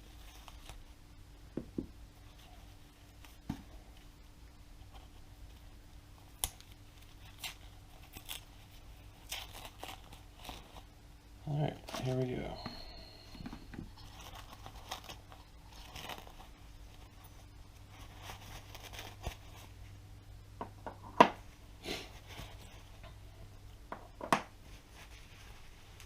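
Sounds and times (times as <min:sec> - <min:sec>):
paper towel rustling: 0:24.6 - 0:26.0.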